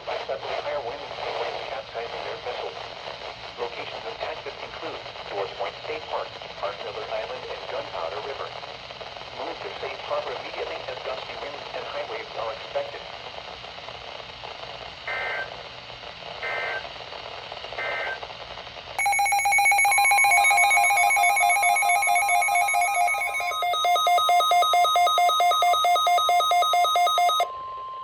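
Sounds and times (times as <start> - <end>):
warbling data bursts: 19.0 - 27.4
rapidly pulsing alarm: 19.0 - 28.0
steady warning tone: 19.0 - 28.0.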